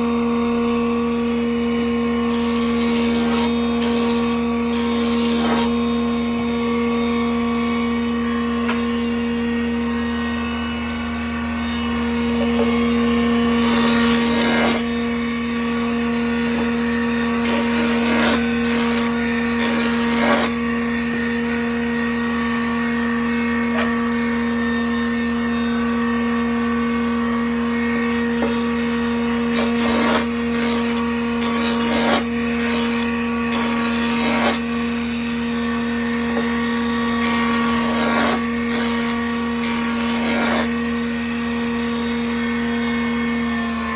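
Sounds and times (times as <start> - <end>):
band saw motor humming: 0.0 - 43.9
saw blade cutting wood: 2.2 - 6.2, 11.4 - 22.0, 23.2 - 24.4, 27.7 - 41.5.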